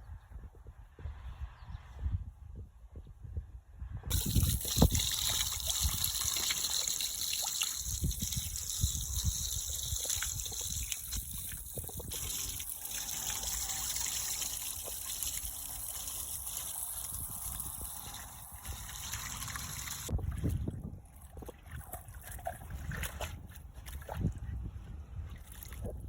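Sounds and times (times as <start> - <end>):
running water hiss: 4.1 - 20.1.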